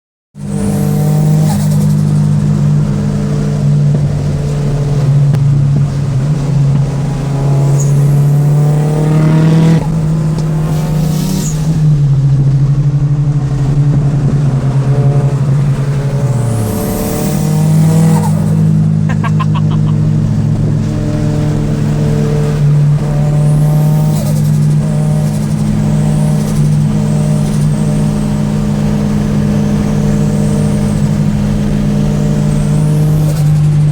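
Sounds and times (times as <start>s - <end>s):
car engine idling and revving: 0.4s - 33.9s.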